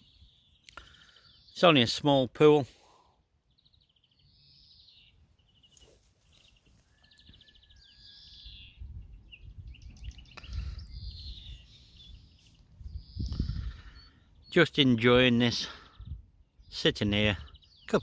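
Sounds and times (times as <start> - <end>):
songbirds singing: 0.0 - 18.0.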